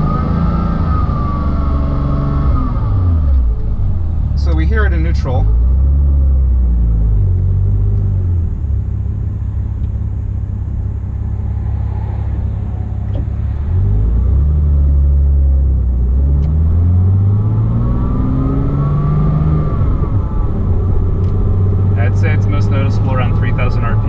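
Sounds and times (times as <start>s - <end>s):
car engine running while driving: 0.0s - 24.0s
high-pitched whine: 9.6s - 15.3s.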